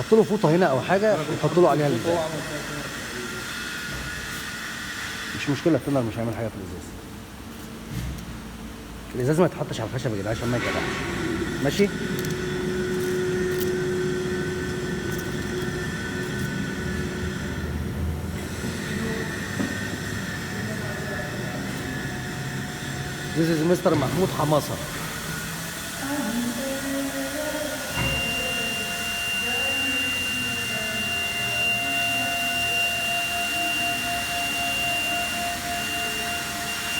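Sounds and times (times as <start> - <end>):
factory machinery humming: 0.0 - 36.9
high-pitched whine: 9.4 - 36.9
held tone: 27.9 - 36.9.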